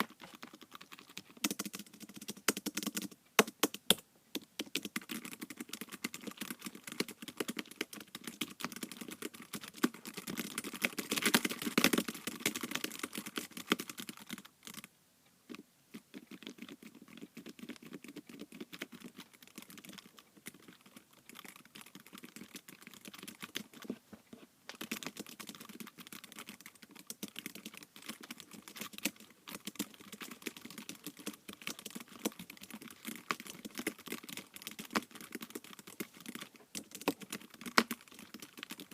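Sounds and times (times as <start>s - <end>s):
fast typing key clicks: 1.4s - 3.1s.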